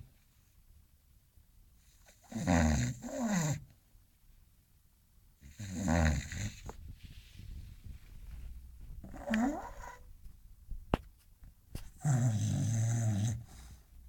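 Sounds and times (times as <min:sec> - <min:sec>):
dog snoring: 0:01.9 - 0:03.6, 0:05.4 - 0:06.8, 0:09.0 - 0:10.0, 0:12.0 - 0:13.8.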